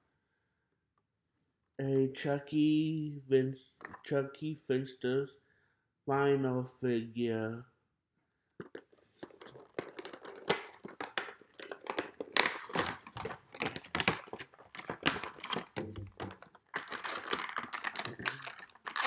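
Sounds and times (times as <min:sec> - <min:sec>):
packaging crinkling and tearing: 0:09.2 - 0:19.0.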